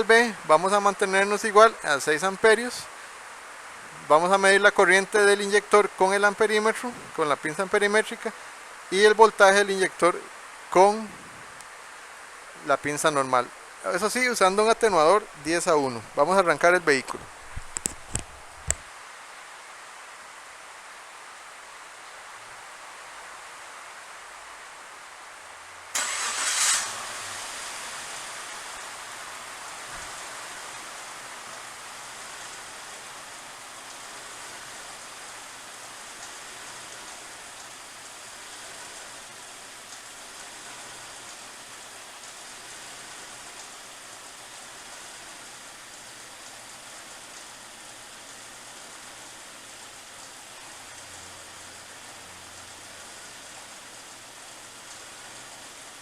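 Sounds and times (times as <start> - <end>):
engine cranking and starting: 26.0 - 28.1
engine idling: 26.0 - 33.0.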